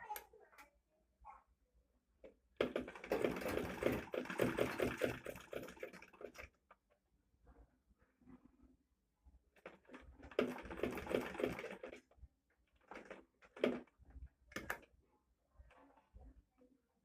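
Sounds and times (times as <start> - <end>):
sewing machine clattering stitches: 2.6 - 6.6, 9.6 - 12.0, 12.8 - 13.9.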